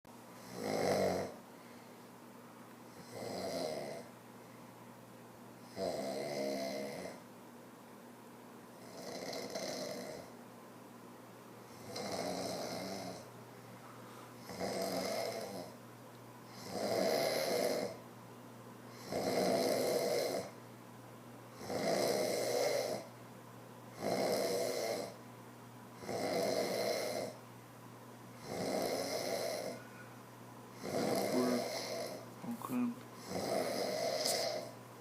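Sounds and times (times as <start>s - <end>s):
man snoring: 0.4s - 1.4s, 2.9s - 4.1s, 5.6s - 7.2s, 8.8s - 10.3s, 11.7s - 13.3s, 14.4s - 15.8s, 16.5s - 18.0s, 18.9s - 20.6s, 21.6s - 23.1s, 24.0s - 25.2s, 26.0s - 27.4s, 28.4s - 29.8s, 30.8s - 34.7s.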